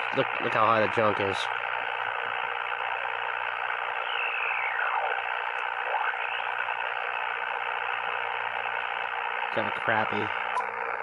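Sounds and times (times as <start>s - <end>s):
radio static hiss: 0.0s - 11.0s
radio tuning whistles: 0.0s - 11.0s.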